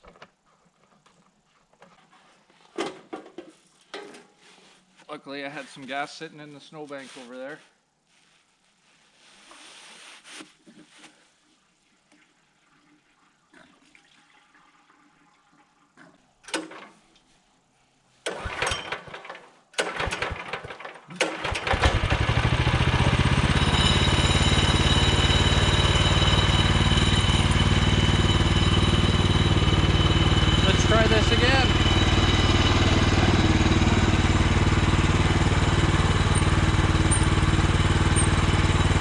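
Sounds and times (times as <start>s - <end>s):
recoil starter pulled: 18.2s - 25.3s
gas engine running loudly: 21.6s - 39.0s.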